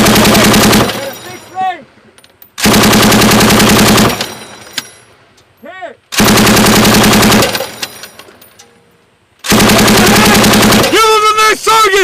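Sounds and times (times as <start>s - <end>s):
machine gun automatic fire: 0.0s - 1.1s, 2.6s - 4.4s, 6.2s - 7.9s, 9.4s - 11.3s
person shouting: 10.0s - 12.0s.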